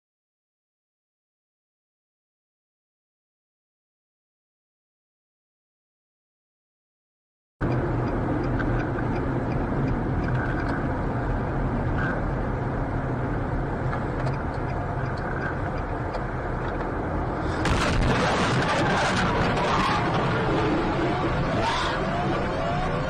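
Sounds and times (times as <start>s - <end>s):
faint ticks: 7.6s - 10.8s
car engine: 7.6s - 23.0s
road noise: 7.6s - 23.0s.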